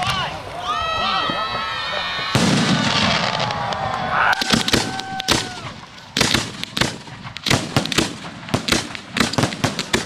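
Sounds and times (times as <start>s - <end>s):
fireworks bangs and crackling: 2.2s - 10.0s.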